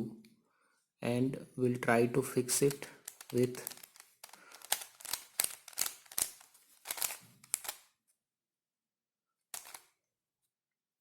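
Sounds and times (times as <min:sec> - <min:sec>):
plastic puzzle clicking: 0:02.6 - 0:07.9, 0:09.5 - 0:09.9.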